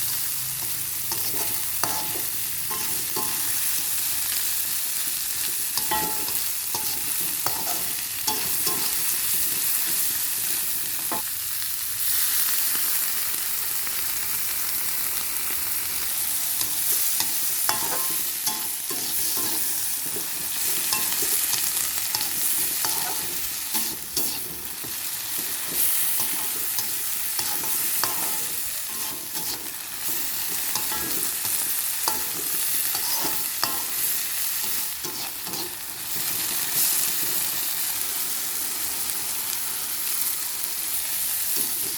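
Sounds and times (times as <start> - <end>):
vegetables sizzling in oil: 0.0 - 41.9
spatula scraping pan: 0.6 - 3.9, 5.8 - 10.1, 16.6 - 37.1.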